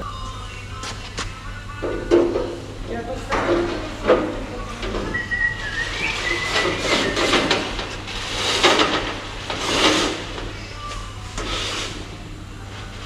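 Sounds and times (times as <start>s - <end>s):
fitting scraping along boom: 2.3s - 10.7s.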